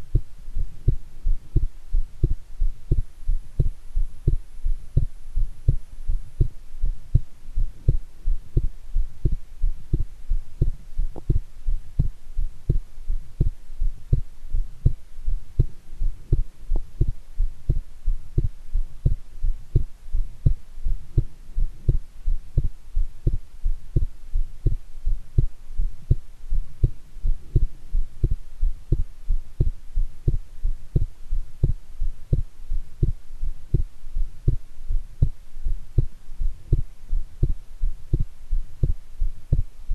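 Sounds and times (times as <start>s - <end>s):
pounding heartbeat: 0.1s - 39.7s.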